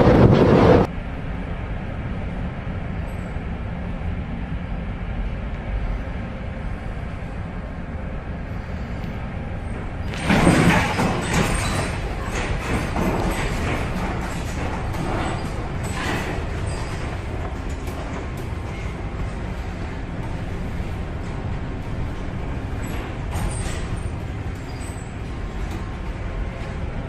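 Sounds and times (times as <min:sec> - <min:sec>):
rush of wind and sea spray: 0:00.0 - 0:00.9
ship rumbling: 0:00.0 - 0:27.0.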